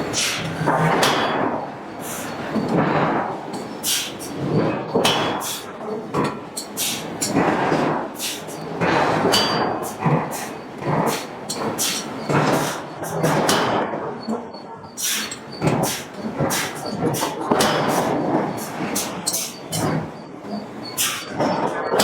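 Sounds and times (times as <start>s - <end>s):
forging hammer striking steel: 0.0s - 1.6s, 3.5s - 13.9s, 15.0s - 20.1s.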